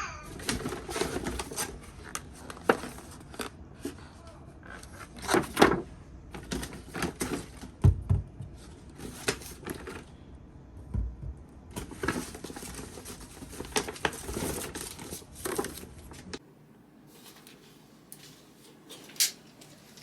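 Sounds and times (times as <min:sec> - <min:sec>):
handling noise rustling: 0:11.7 - 0:16.4.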